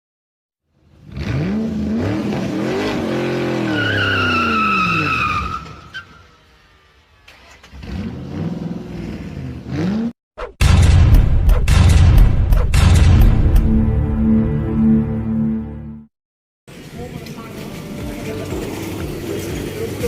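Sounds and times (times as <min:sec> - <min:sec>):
car engine revving: 0:00.8 - 0:10.2
tyre squeal: 0:03.6 - 0:06.4
loud music: 0:10.6 - 0:16.1.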